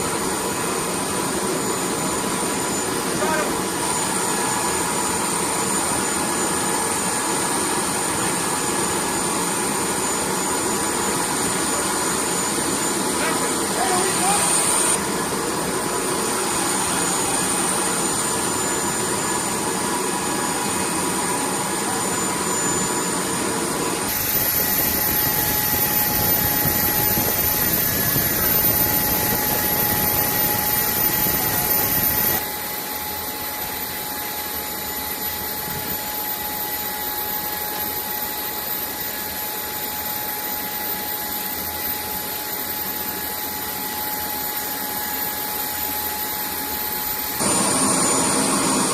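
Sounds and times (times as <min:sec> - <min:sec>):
jet engines running: 0:00.0 - 0:48.9.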